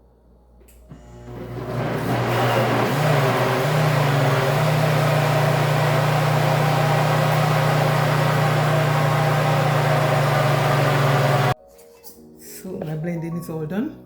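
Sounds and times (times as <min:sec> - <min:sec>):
blender running: 0:00.9 - 0:11.6.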